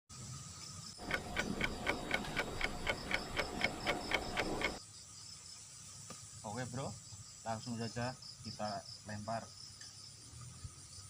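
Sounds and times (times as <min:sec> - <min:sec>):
faint high insect trill: 0:00.1 - 0:11.0
mechanical ticking: 0:01.0 - 0:04.8.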